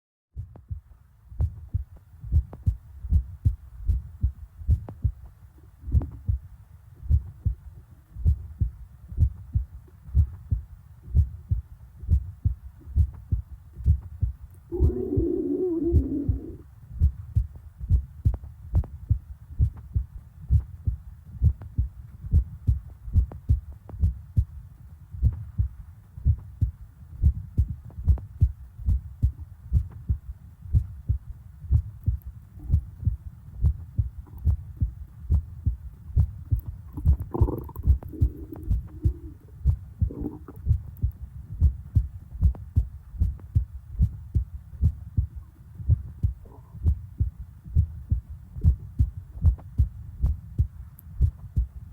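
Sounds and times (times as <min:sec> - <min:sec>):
heartbeat double thumps: 0:00.4 - 0:51.9
stomach gurgles: 0:14.7 - 0:16.6, 0:36.6 - 0:40.9.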